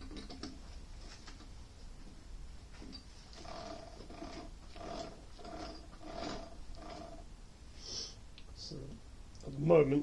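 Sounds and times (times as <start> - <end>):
lathe chuck scraping rasp: 3.4 - 7.2.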